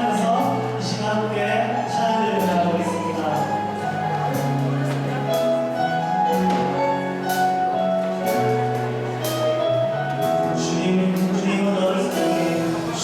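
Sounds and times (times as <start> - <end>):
sustained keyboard chords: 0.0 - 13.0.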